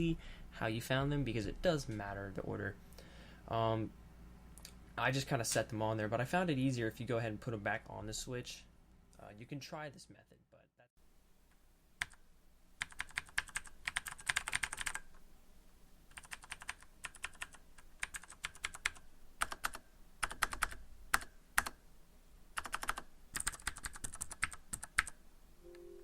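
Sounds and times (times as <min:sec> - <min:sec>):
mechanical keyboard typing: 0:12.0 - 0:12.2, 0:12.8 - 0:15.1, 0:16.1 - 0:21.8, 0:22.6 - 0:25.2.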